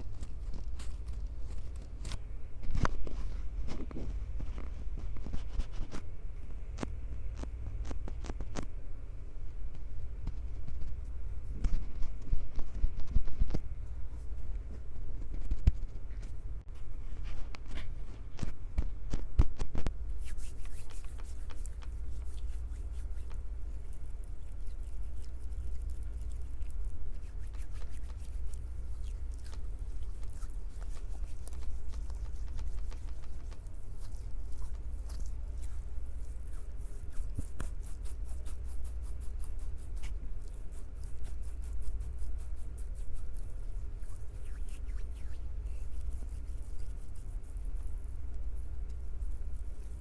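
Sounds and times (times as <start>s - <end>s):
microphone handling rumble: 9.5s - 20.0s.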